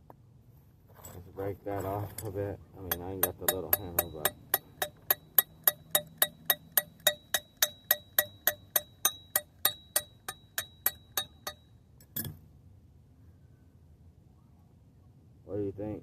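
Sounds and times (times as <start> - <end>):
metal tapping on steel: 1.8 - 12.4
heavy metal knock: 2.9 - 11.6.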